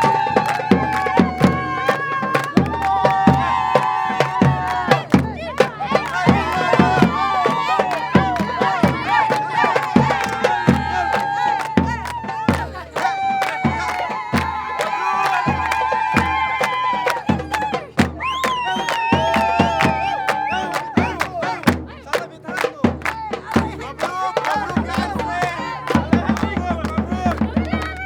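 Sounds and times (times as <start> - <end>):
crowd shouting and cheering: 0.0 - 28.0
drums beating: 0.0 - 28.0.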